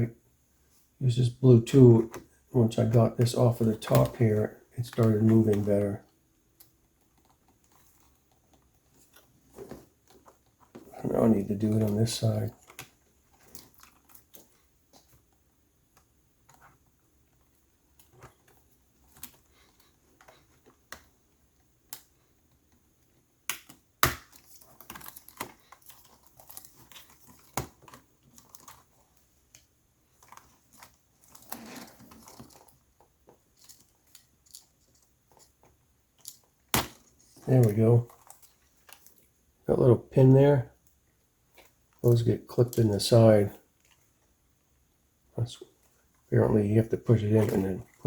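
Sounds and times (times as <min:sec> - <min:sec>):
plastic clicks and snaps: 0:23.4 - 0:28.8.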